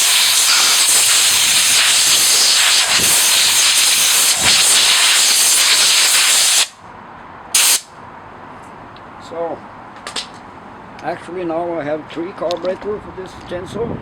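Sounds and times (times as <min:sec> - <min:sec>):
pressurized gas hissing: 0:00.0 - 0:06.8, 0:07.6 - 0:07.9.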